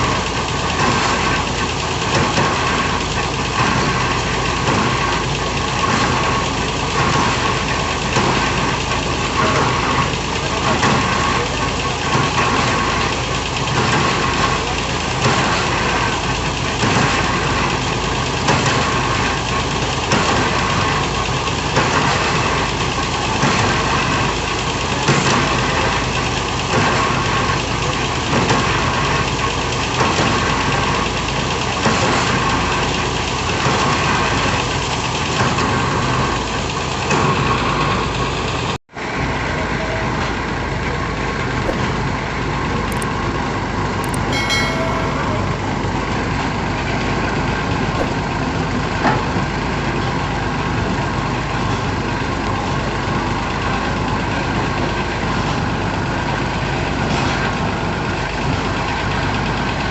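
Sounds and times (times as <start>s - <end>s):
heavy diesel engine pulsing: 0.0s - 35.3s.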